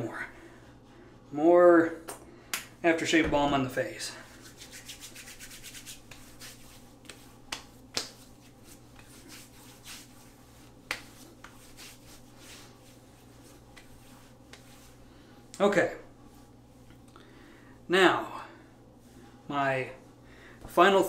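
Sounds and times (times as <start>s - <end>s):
wet rubbing and patting on skin: 4.2s - 17.1s.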